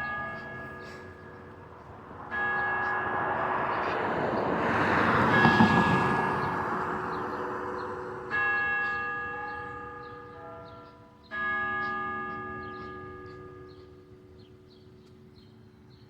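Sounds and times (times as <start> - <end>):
church bell striking: 0.0 - 4.0, 8.3 - 14.4.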